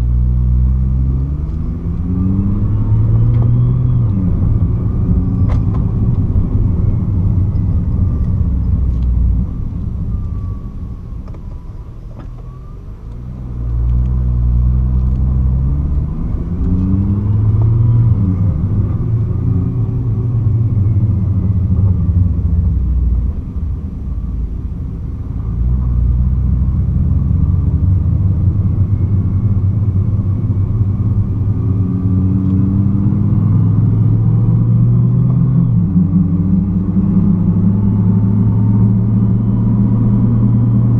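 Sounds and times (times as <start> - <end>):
car engine revving: 0.0 - 40.9
faint gliding whine: 33.5 - 40.9.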